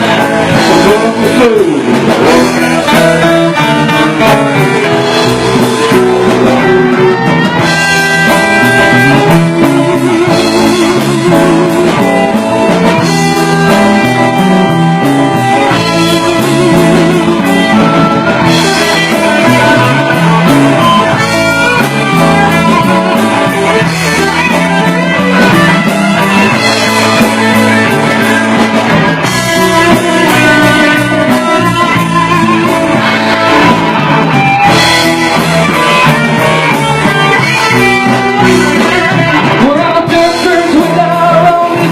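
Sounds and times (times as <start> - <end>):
guitar wavering notes: 0.0 - 41.9
live rock band instrumental: 0.0 - 41.9.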